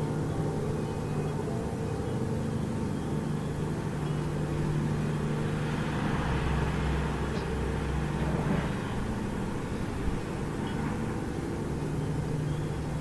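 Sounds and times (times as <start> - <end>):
low droning hum: 0.0 - 13.0
noisy rumble: 0.0 - 13.0.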